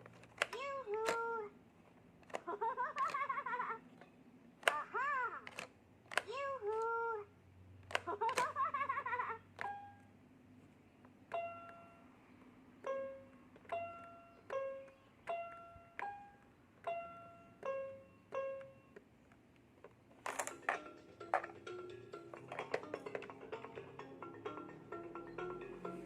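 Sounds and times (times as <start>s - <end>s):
toy instrument clicky notes: 0.2s - 1.4s, 4.6s - 6.9s, 9.5s - 10.1s, 11.3s - 12.0s, 12.8s - 19.1s, 20.2s - 26.0s.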